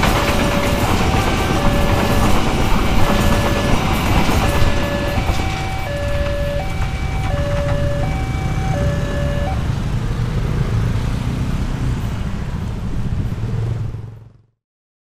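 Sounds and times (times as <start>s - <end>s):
level crossing siren two-tone: 0.0s - 9.6s
low engine rumble: 0.0s - 10.2s.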